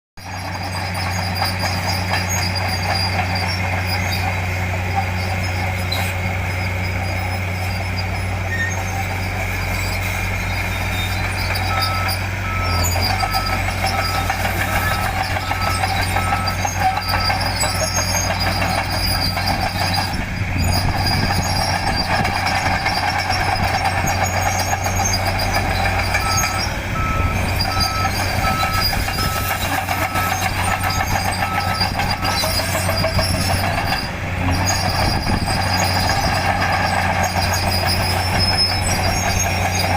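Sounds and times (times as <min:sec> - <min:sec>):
diesel engine droning: 0:00.2 - 0:39.9
back-up alarm beeping: 0:26.2 - 0:32.4.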